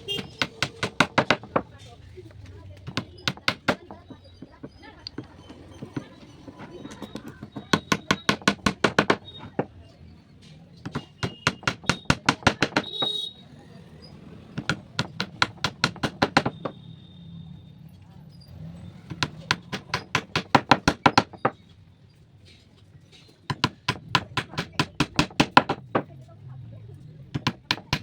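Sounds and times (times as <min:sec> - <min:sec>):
rapid hammering on wood: 0:00.0 - 0:01.7, 0:02.8 - 0:09.7, 0:10.8 - 0:13.2, 0:14.6 - 0:16.8, 0:19.1 - 0:21.6, 0:23.5 - 0:26.1, 0:27.3 - 0:28.0.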